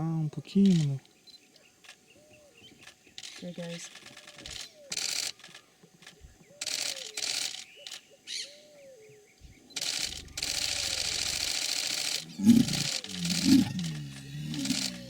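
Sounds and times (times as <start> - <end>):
caiman deep low bellow: 9.9 - 15.0.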